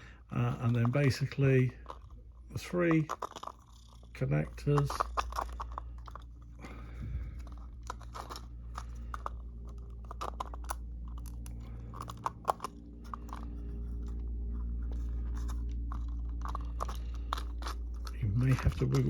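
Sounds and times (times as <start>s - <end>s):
plastic parts rustling: 0.0s - 19.0s
steady low hum: 0.0s - 19.0s.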